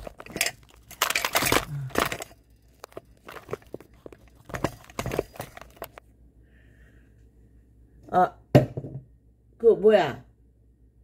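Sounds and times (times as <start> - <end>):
crinkling and rustling handling noise: 0.0 - 6.1.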